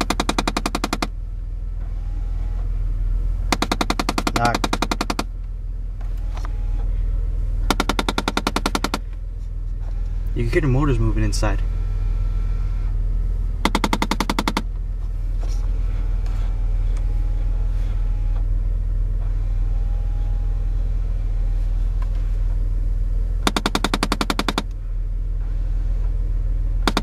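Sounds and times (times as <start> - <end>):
rapid knocking from car dashboard: 0.0 - 1.1, 3.5 - 5.3, 7.6 - 9.1, 13.6 - 14.7, 23.4 - 24.7
car running hum: 0.0 - 27.0
faint whirring of actuator motors: 0.0 - 27.0.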